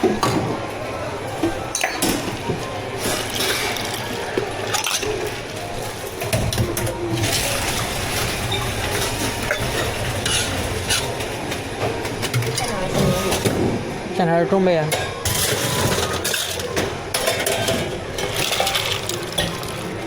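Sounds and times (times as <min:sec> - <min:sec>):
cups and utensils clinking: 0:01.4 - 0:13.6, 0:14.9 - 0:20.0.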